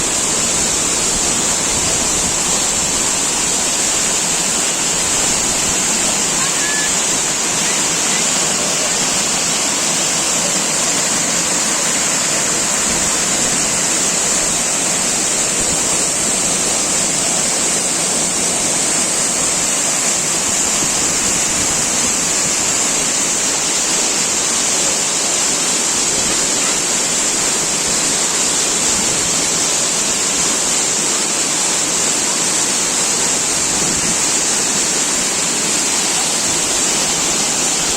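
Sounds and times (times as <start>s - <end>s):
waterfall rushing: 0.0s - 37.9s.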